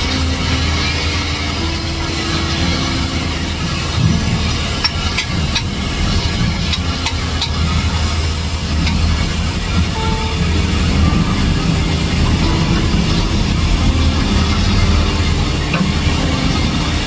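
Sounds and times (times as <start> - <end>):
machinery hum: 0.0 - 17.0.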